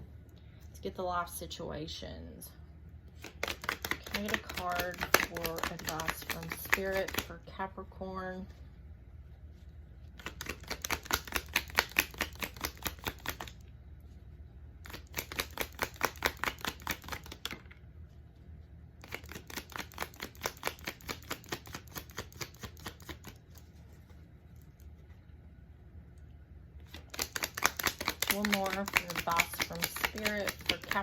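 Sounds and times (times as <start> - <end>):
cards being shuffled: 3.2 - 7.4, 10.0 - 13.7, 14.8 - 17.8, 19.0 - 25.0, 26.8 - 31.0.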